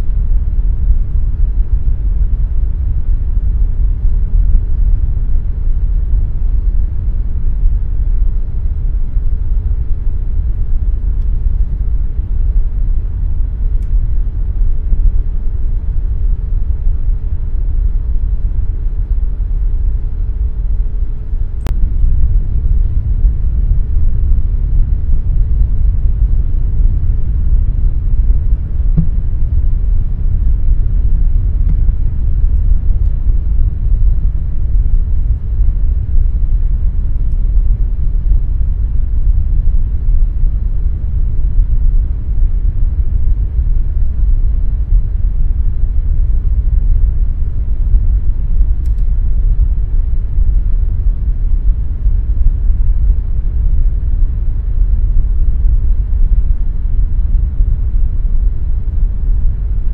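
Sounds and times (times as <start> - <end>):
air conditioner rumbling: 0.0 - 59.9
faint hum: 0.0 - 59.9
single click: 48.9 - 49.1.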